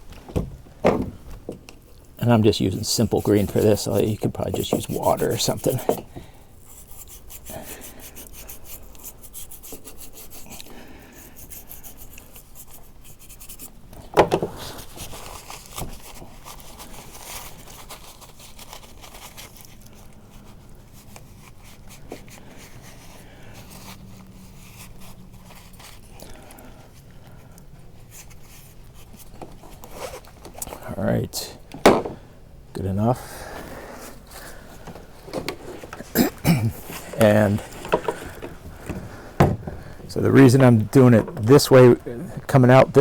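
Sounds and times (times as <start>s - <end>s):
toothbrush scrubbing plastic: 2.2s - 13.8s
sharp knock: 31.8s - 32.2s.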